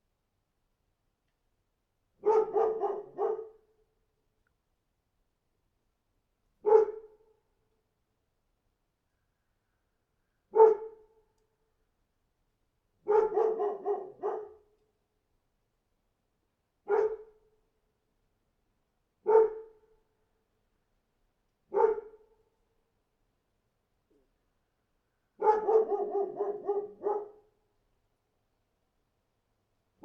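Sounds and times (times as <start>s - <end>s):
dog barking: 2.2s - 3.6s, 6.6s - 7.2s, 10.5s - 11.1s, 13.0s - 14.7s, 16.9s - 17.3s, 19.2s - 19.8s, 21.7s - 22.2s, 25.4s - 27.5s.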